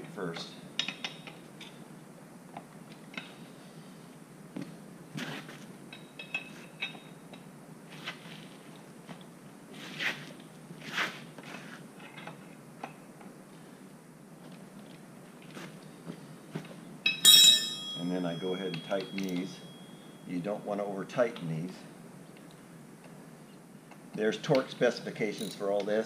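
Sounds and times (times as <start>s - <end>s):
hand tools clinking on metal: 17.1s - 20.0s, 24.5s - 26.0s.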